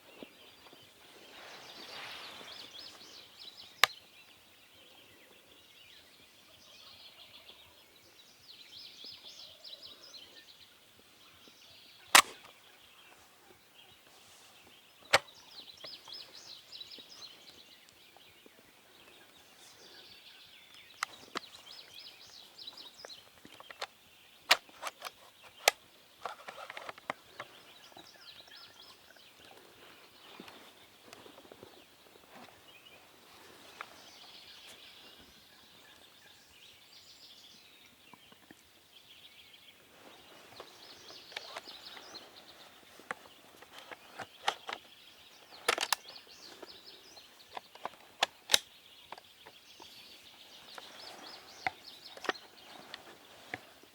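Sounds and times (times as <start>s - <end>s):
songbirds trilling: 0.0s - 53.9s
sharp clicks: 12.1s - 12.6s, 45.6s - 46.1s, 47.5s - 49.3s.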